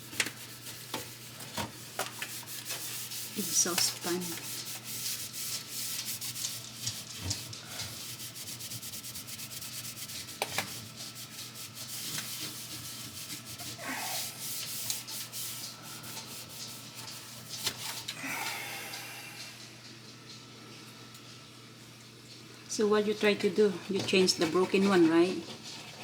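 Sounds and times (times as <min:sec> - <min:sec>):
rag scrubbing metal hood: 0:00.0 - 0:18.1, 0:23.4 - 0:26.0.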